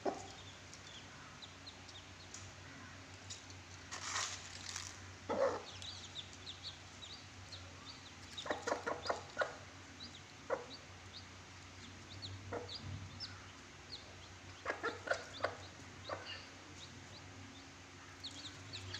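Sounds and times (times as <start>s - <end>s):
hen clucking: 0.0s - 0.5s, 5.2s - 17.2s
chicks peeping: 0.0s - 18.9s.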